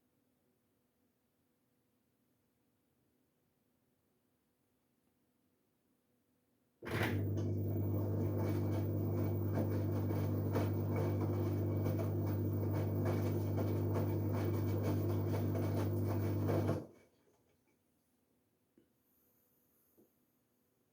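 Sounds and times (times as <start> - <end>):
washing machine humming: 6.8 - 16.9.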